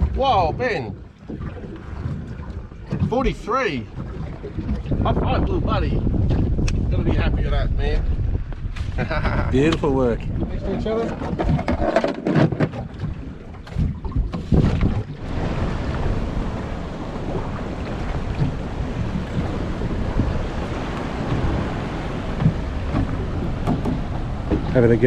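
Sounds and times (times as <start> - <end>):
rush of wind and water: 0.0 - 25.0
wind buffeting microphone: 0.0 - 25.0.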